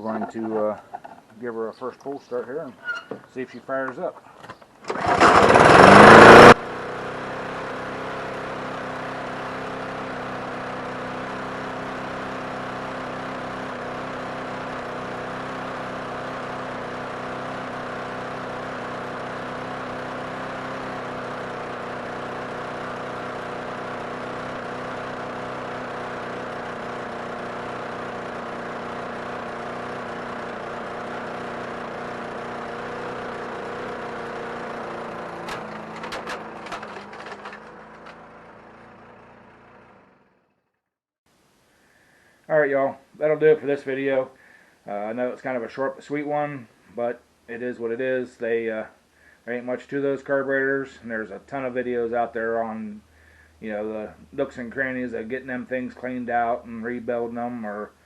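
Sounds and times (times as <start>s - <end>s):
lawn mower engine running: 0.0s - 1.4s, 4.8s - 40.4s.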